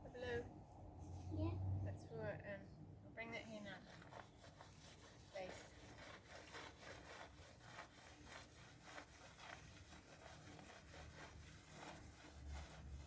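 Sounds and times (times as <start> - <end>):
scraping strokes by hand: 3.5 - 13.0.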